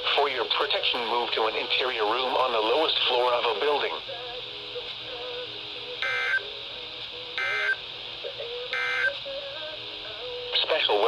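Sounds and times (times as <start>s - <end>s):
warbling digital data tones: 7.4s - 7.8s.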